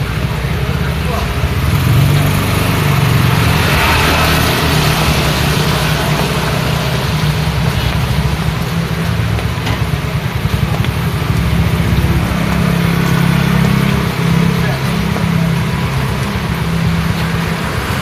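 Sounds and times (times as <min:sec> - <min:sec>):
car and motorbike engines: 0:00.0 - 0:18.0
rain falling: 0:00.0 - 0:18.0.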